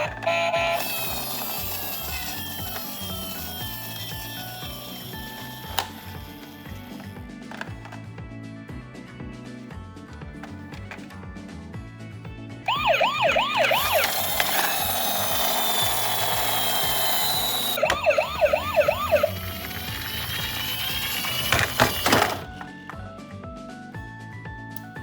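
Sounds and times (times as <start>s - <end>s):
electronic siren yelping: 0.0s - 5.6s, 12.7s - 22.1s
background music: 0.0s - 25.0s.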